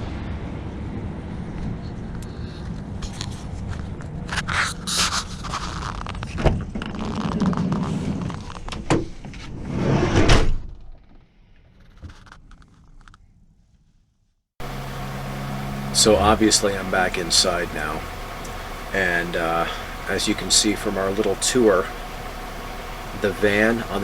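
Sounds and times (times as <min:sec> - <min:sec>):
knocks and scrapes in van: 0:03.0 - 0:10.8.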